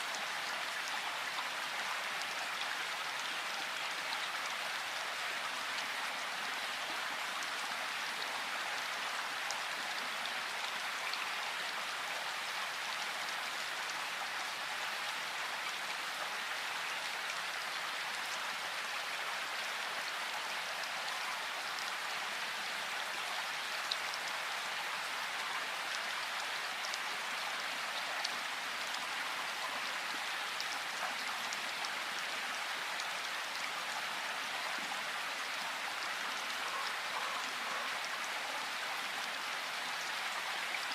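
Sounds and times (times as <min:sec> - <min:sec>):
steady rain hiss: 0:00.0 - 0:40.9.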